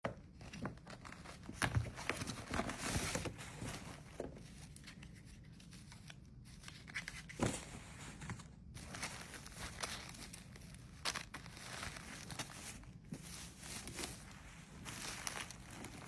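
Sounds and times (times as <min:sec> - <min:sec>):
packaging crinkling and tearing: 0:08.7 - 0:13.0, 0:13.6 - 0:16.0.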